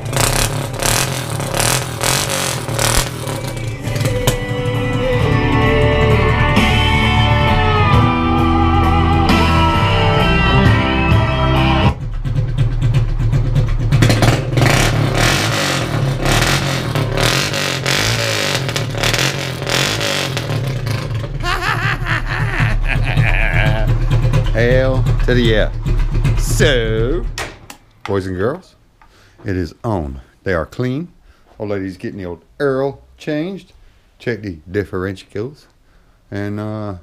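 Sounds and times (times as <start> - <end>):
quad bike engine running: 0.0 - 6.6, 11.9 - 27.4
guitar-backed song through speaker: 3.5 - 12.0.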